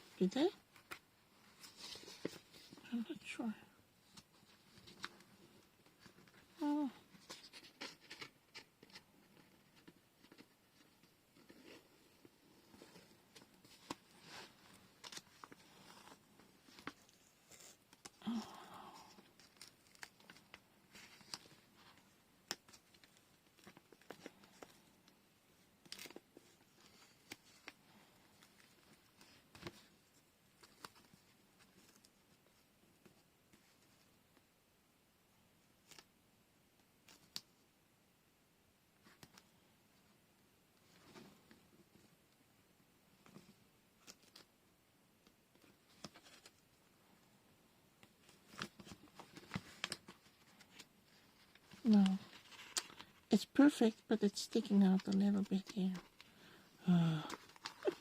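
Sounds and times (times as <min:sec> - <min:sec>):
paper rustling: 0:07.1 - 0:18.1, 0:25.8 - 0:34.0, 0:48.0 - 0:53.2, 0:57.2 - 0:58.0.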